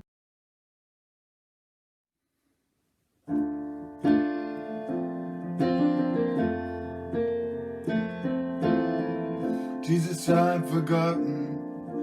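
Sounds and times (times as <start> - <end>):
piano hymn chords: 3.3 - 12.0.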